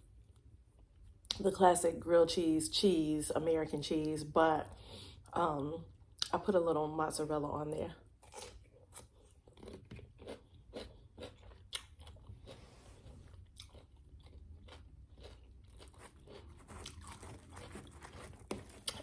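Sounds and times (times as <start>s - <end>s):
chewing crunchy sandwich: 8.2s - 19.0s.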